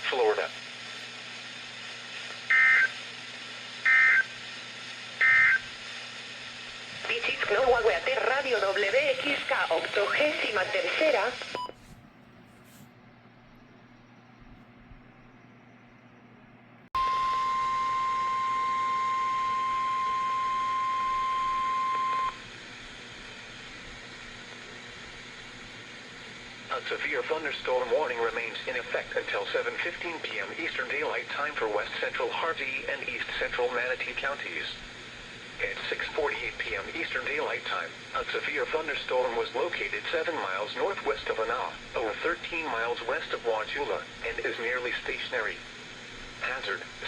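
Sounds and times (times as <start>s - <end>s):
radio hiss: 0.0s - 12.9s, 17.1s - 47.0s
high pure alarm tone: 17.0s - 22.4s.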